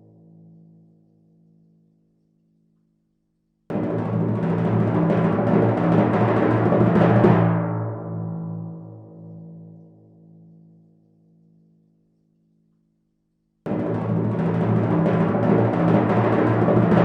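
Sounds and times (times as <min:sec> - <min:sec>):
timpani roll: 0:03.7 - 0:08.1, 0:13.7 - 0:17.0.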